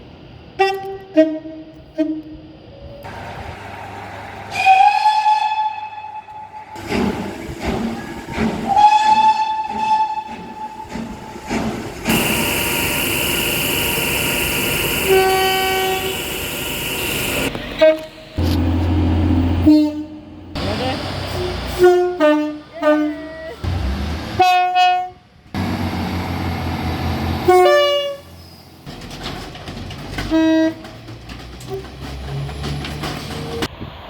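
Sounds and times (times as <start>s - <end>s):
train horn blast: 0.6s - 2.4s, 3.1s - 8.0s, 8.7s - 11.1s, 12.0s - 25.4s, 27.2s - 28.4s, 30.3s - 31.0s
train clattering on rails: 3.0s - 34.0s
loud rushing noise: 3.1s - 5.1s, 11.2s - 21.8s.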